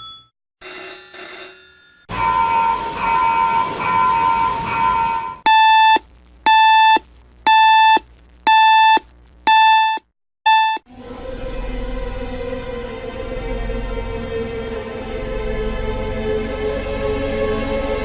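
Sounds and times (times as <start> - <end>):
ringing tone: 1.6 - 5.4
electronic alarm beeps: 2.3 - 10.8.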